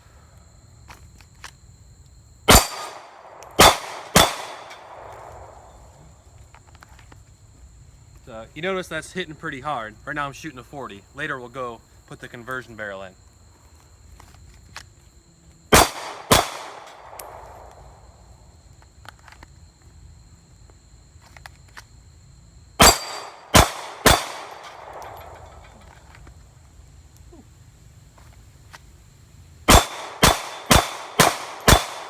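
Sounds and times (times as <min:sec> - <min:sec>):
pistol shots with echo: 0:02.5 - 0:05.7, 0:15.7 - 0:17.8, 0:22.8 - 0:25.7, 0:29.7 - 0:32.0.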